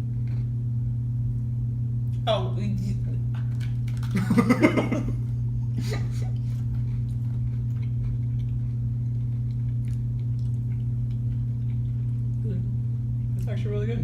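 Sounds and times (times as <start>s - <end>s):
low electrical hum: 0.0s - 14.0s
cookie being chewed: 3.2s - 4.6s, 5.8s - 13.5s.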